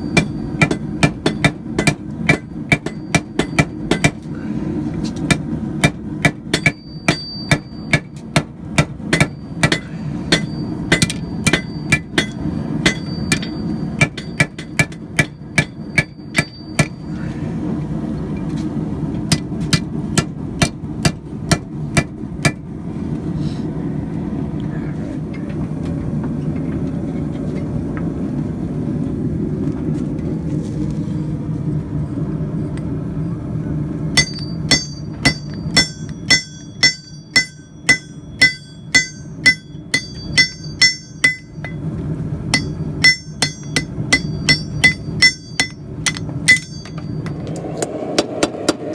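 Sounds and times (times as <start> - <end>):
hammer ringing on anvil: 0.0 - 4.3, 5.3 - 17.1, 34.2 - 41.9, 42.5 - 47.4
steady low hum: 0.0 - 48.9.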